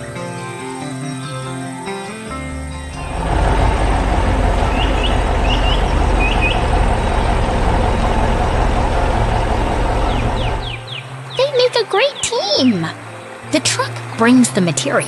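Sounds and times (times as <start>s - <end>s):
truck engine rumbling: 2.8s - 14.3s.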